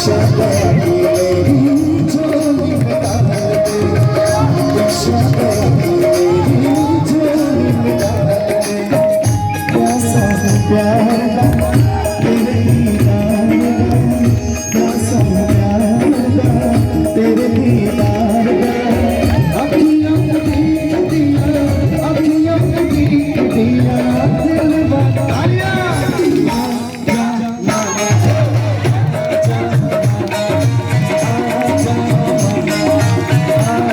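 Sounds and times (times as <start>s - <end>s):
steady drum beat: 0.0s - 33.9s.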